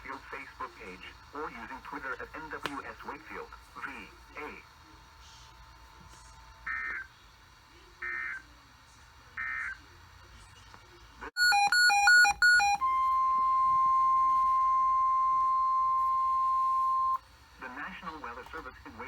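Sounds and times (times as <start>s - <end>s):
rapidly switching electronic tones: 11.4s - 17.2s
steady alarm tone: 11.4s - 17.2s.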